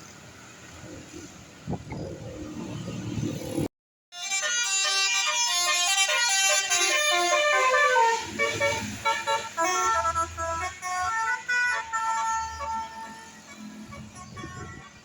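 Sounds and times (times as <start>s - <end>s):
multi-tone air horn melody: 4.1s - 15.0s.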